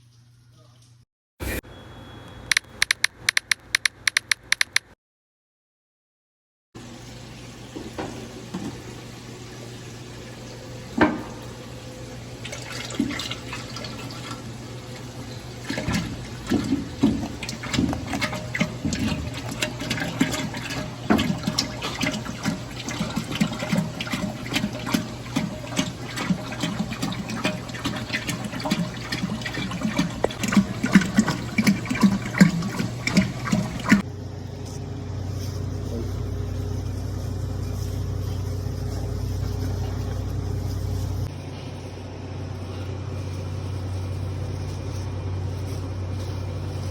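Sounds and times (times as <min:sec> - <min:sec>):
oil bubbling and crackling: 0:06.8 - 0:34.3
steady low hum: 0:29.4 - 0:46.9.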